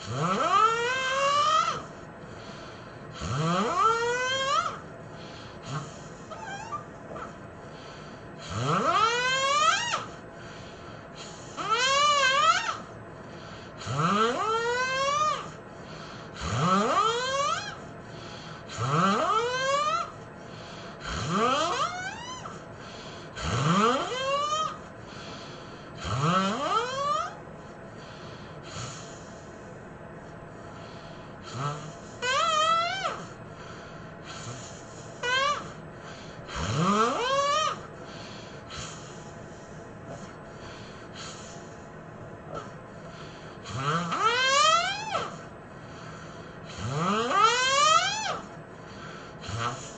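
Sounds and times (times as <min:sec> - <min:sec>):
person snoring: 0:03.1 - 0:04.6, 0:05.5 - 0:07.3, 0:16.3 - 0:17.4, 0:18.6 - 0:19.7, 0:21.0 - 0:22.1, 0:23.3 - 0:24.4, 0:26.0 - 0:27.1, 0:31.4 - 0:32.2, 0:36.4 - 0:37.4, 0:46.7 - 0:47.4, 0:49.4 - 0:49.9
loud snort: 0:03.1 - 0:04.8, 0:05.6 - 0:07.3, 0:08.4 - 0:09.4, 0:16.4 - 0:17.6, 0:18.6 - 0:19.8, 0:21.0 - 0:22.0, 0:23.3 - 0:24.4, 0:26.0 - 0:27.1, 0:31.4 - 0:32.4, 0:36.5 - 0:37.4, 0:43.6 - 0:45.4, 0:46.7 - 0:47.7, 0:49.4 - 0:49.9.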